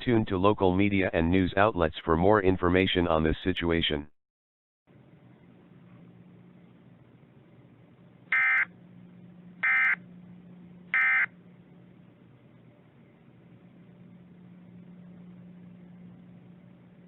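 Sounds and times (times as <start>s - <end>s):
faint hum and hiss: 4.9s - 17.0s
harsh buzzing data bursts: 9.6s - 10.0s.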